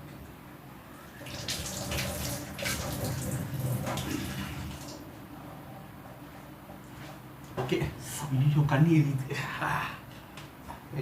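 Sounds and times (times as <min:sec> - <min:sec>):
tap water splashing into sink: 0:01.2 - 0:05.0.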